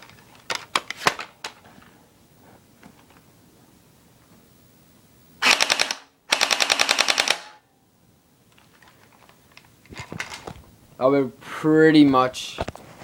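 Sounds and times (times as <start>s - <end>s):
airsoft gun firing bursts: 5.4s - 7.6s.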